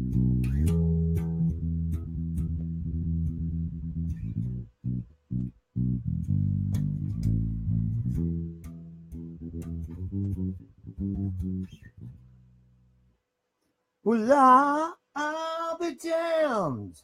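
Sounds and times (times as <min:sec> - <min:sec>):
bass guitar plucked notes: 0:00.0 - 0:13.1
string clicks: 0:06.7 - 0:07.5.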